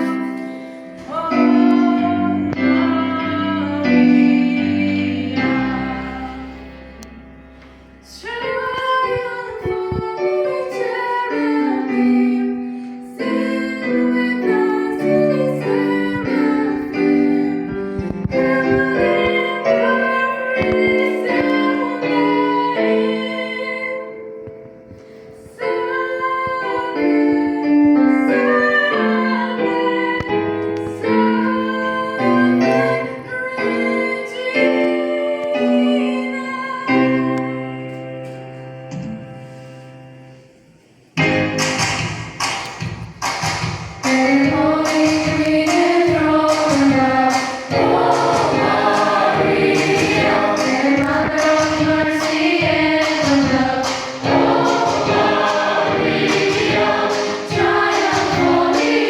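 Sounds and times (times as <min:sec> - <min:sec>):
choir singing a hymn: 0:00.0 - 0:07.4, 0:09.5 - 0:24.2, 0:44.2 - 0:59.0
piano accompaniment: 0:00.0 - 0:59.0.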